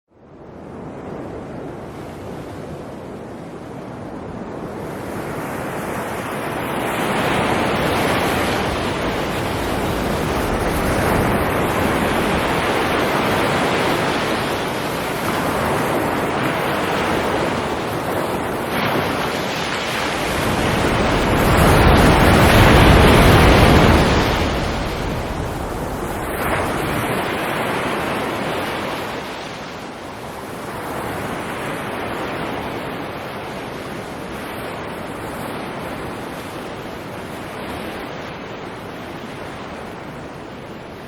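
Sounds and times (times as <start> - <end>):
sea waves breaking on shore: 0.4 - 41.0
low surf rumble: 8.6 - 14.7, 20.1 - 27.6.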